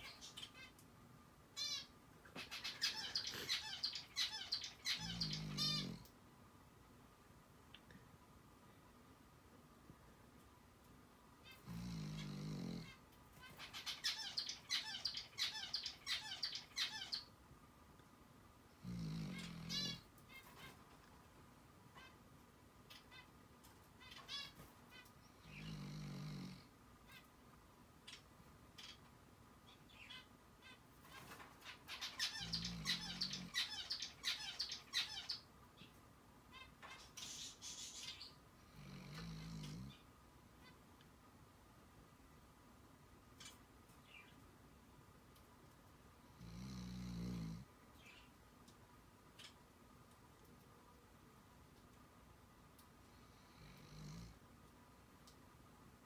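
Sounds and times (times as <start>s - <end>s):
low snore: 11.7s - 12.9s, 18.8s - 19.7s, 25.5s - 26.7s, 38.7s - 40.0s, 46.3s - 47.7s, 53.2s - 54.4s
person snoring: 11.7s - 12.9s, 18.8s - 19.7s, 25.6s - 26.7s.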